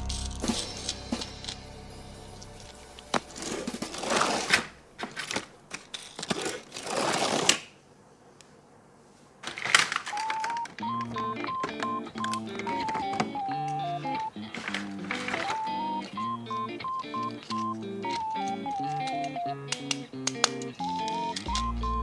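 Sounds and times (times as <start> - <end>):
simple tune of held notes: 10.8 - 14.5, 15.3 - 22.0.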